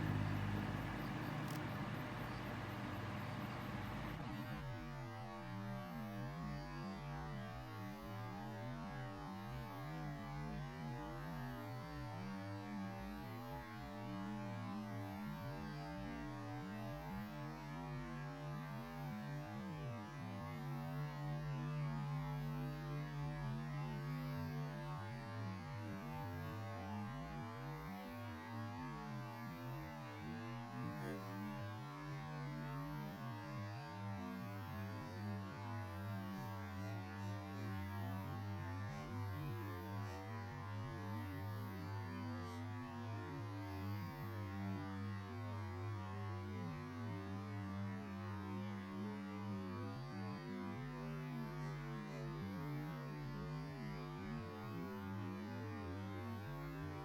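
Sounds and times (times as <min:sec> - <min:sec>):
low droning hum: 0:00.0 - 0:04.4.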